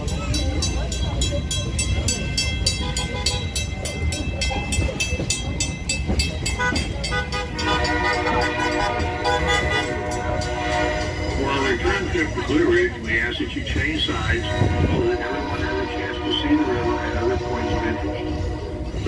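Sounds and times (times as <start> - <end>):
train rumbling and clicking on track: 0.0 - 19.0
train horn chord: 6.6 - 12.2, 14.4 - 19.0.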